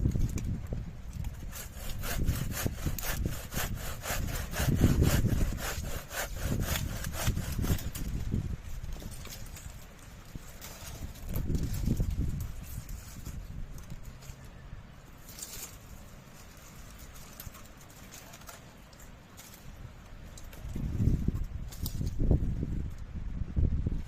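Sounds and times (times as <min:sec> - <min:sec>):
wind rumble on microphone: 0:00.0 - 0:14.8, 0:19.5 - 0:24.0
hand saw cutting wood: 0:01.2 - 0:08.2.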